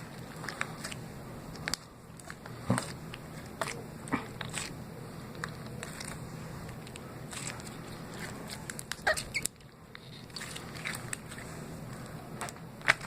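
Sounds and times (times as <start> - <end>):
wet crackles and clicks: 0.2 - 4.7
slime and water beads squeezed: 7.3 - 11.4.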